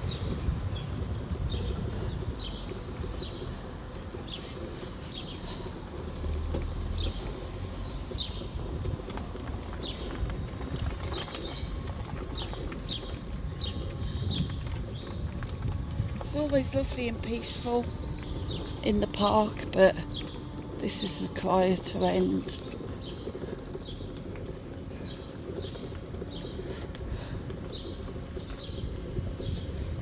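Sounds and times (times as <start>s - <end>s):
small birds chirping: 0.0s - 30.0s.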